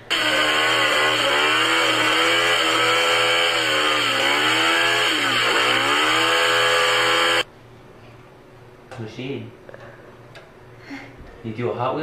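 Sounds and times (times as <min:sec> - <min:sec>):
engine revving: 0:00.0 - 0:07.4.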